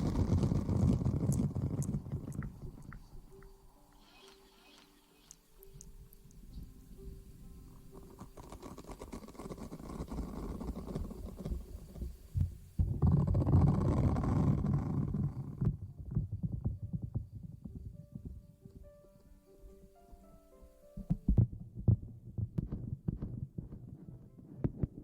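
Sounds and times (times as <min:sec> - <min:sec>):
rustling against microphone: 0:21.0 - 0:25.0.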